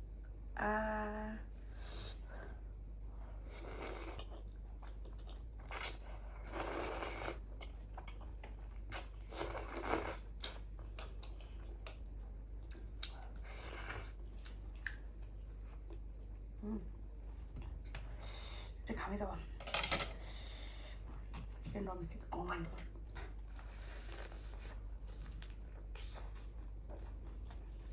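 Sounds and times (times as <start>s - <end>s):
chewing and mouth sounds: 3.0s - 16.6s, 22.9s - 27.9s.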